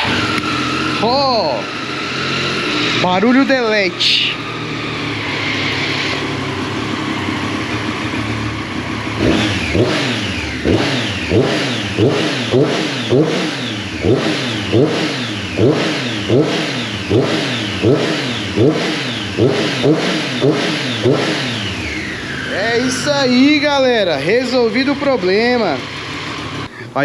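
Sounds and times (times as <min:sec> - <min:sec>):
motorcycle engine revving: 0:00.0 - 0:27.0.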